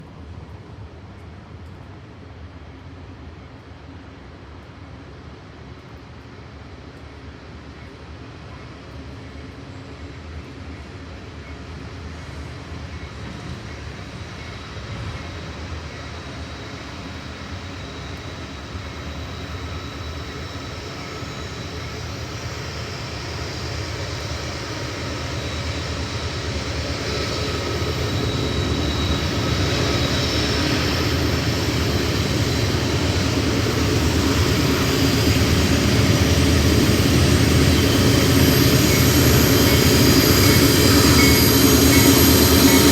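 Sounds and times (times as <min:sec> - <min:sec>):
train rumble: 0:00.0 - 0:42.9
high-pitched wheel tones: 0:38.0 - 0:42.9.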